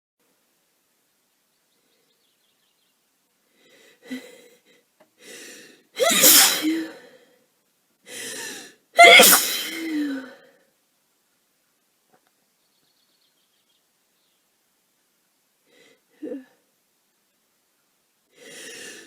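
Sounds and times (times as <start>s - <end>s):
sharp inhale: 5.2s - 7.4s, 18.3s - 19.0s
woman sneezing: 6.0s - 7.0s, 9.0s - 10.3s.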